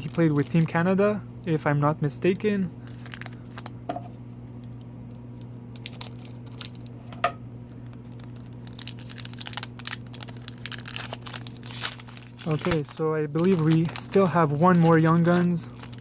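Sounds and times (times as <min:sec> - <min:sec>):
foil wrapper crinkling and tearing: 0:00.0 - 0:01.0, 0:02.8 - 0:03.8, 0:05.3 - 0:16.0.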